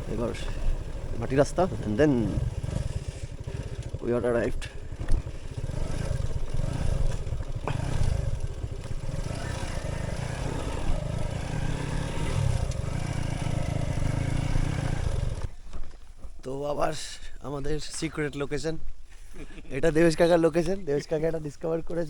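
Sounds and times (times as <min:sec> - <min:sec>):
vehicle engine on dirt road: 0:00.0 - 0:15.9.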